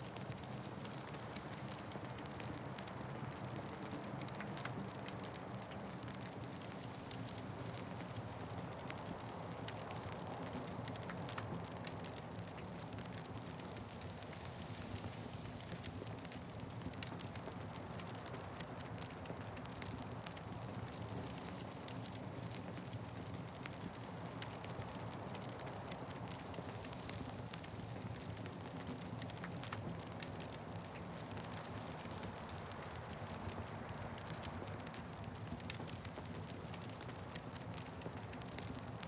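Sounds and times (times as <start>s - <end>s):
wood fire crackling: 0.1s - 39.0s.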